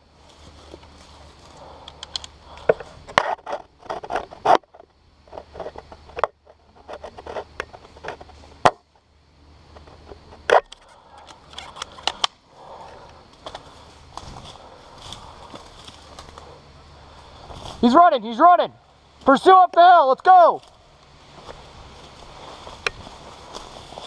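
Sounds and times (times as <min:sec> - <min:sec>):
scraping through brush: 0:09.8 - 0:19.4, 0:20.6 - 0:24.0
twigs cracking and snapping: 0:10.3 - 0:16.6.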